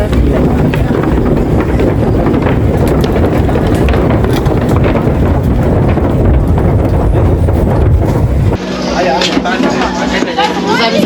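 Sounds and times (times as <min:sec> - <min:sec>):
wind buffeting microphone: 0:00.0 - 0:08.6.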